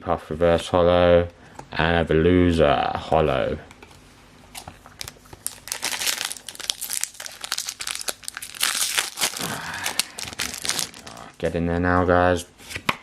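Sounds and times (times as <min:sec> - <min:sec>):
foil wrapper crinkling: 0:04.5 - 0:11.5.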